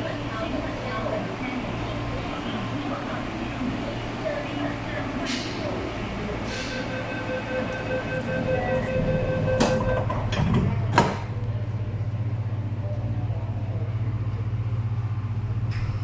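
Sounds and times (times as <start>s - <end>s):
low pulsing train hum: 0.0s - 16.0s
door warning tone: 6.7s - 10.3s.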